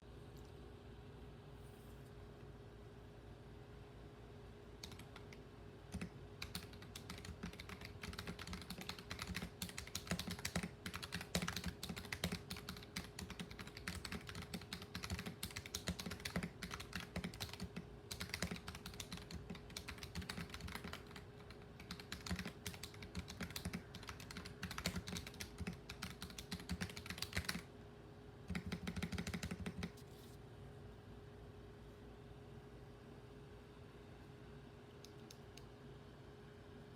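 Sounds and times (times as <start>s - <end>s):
faint steady hum: 0.0s - 36.9s
mechanical keyboard typing: 4.8s - 27.7s, 28.5s - 30.0s.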